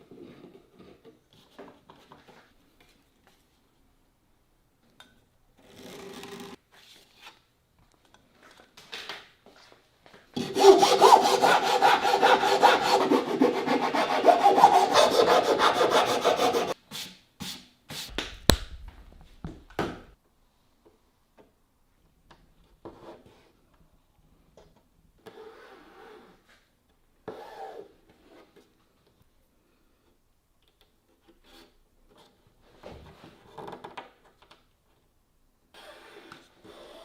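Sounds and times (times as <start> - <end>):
wood being sawn: 10.4 - 16.8
sharp knocks and clicks: 18.1 - 20.1.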